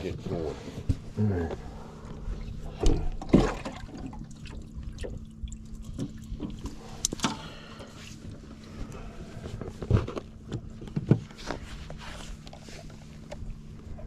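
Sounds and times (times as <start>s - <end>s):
water sloshing and splashing: 1.7s - 8.8s.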